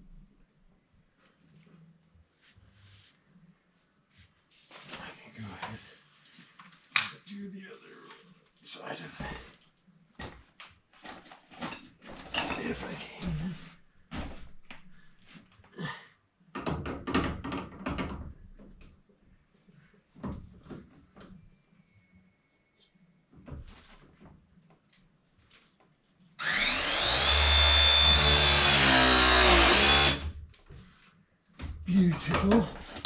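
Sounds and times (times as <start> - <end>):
pipe press tool motor running: 26.4 - 30.3.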